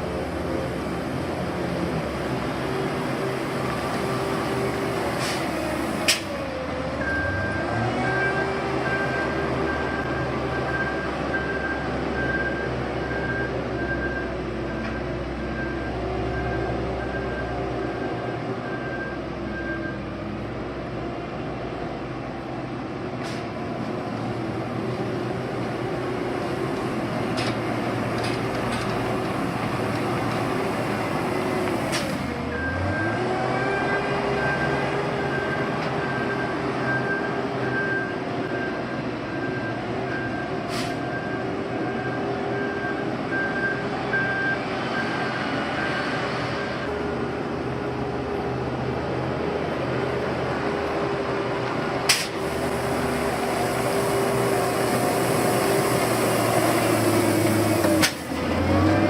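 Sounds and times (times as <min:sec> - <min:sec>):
road-paving machinery running: 0:00.0 - 0:59.0
reversing alarm beeping: 0:07.0 - 0:20.1, 0:32.5 - 0:46.7
heavy machinery humming: 0:46.8 - 0:59.0.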